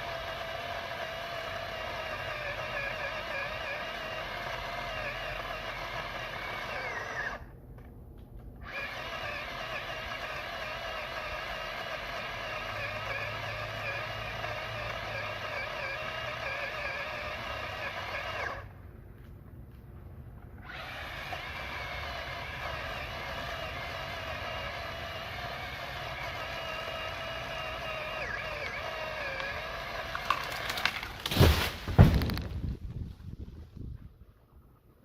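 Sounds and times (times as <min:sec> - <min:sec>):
chainsaw cutting wood: 0:00.0 - 0:07.6, 0:08.6 - 0:18.7, 0:20.5 - 0:32.5.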